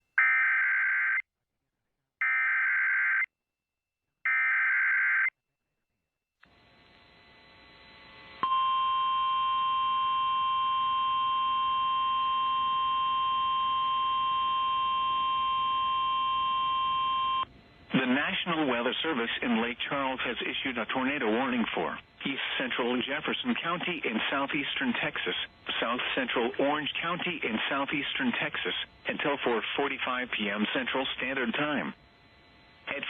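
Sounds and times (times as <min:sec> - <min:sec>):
faint radio hiss: 0:17.8 - 0:33.0.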